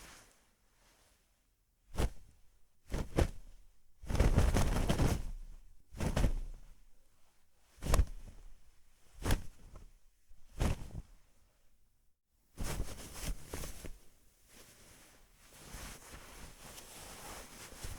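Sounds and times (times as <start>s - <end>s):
clothing fabric swishing: 0.0s - 1.2s, 2.9s - 6.8s, 12.6s - 17.9s.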